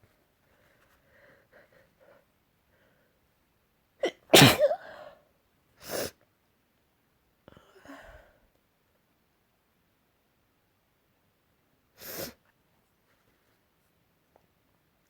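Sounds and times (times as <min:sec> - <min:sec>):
person sneezing: 0:04.0 - 0:05.2
faint sniffs: 0:12.0 - 0:12.5.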